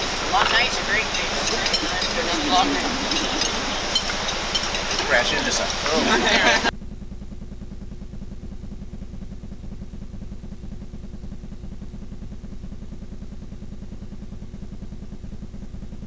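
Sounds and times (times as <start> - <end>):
engine humming with fast pulse: 0.0 - 6.7.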